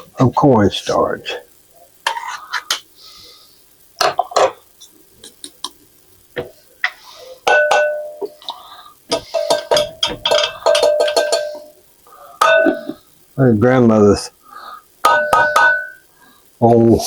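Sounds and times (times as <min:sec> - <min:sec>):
spoon clinking in metal cup: 0:09.1 - 0:11.8, 0:15.0 - 0:16.0.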